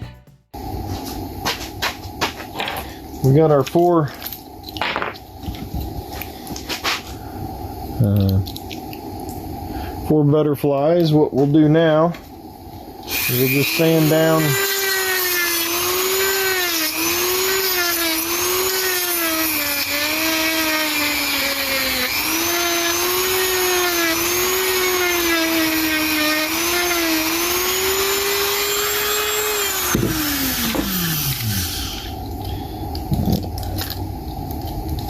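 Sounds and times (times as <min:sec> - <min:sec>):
electric sander on wood: 0:13.1 - 0:32.2.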